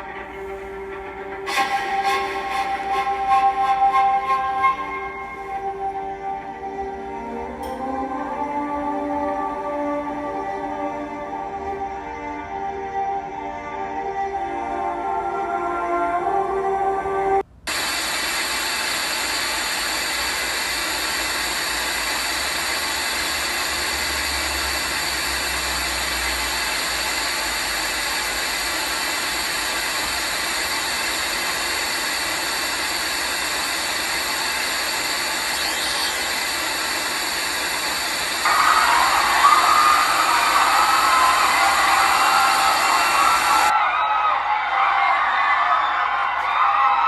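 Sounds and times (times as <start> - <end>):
music: 0.0 - 17.4
static hiss: 17.5 - 43.7
rough mid-pitched noise: 17.7 - 43.8.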